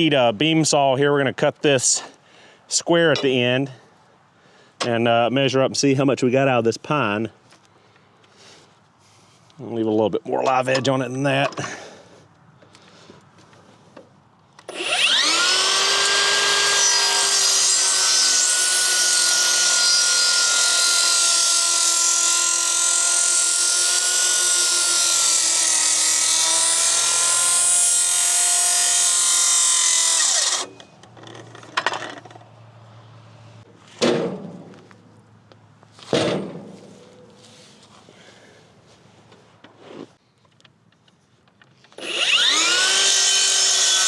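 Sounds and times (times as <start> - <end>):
circular saw cutting wood: 14.6 - 30.9, 42.0 - 44.0.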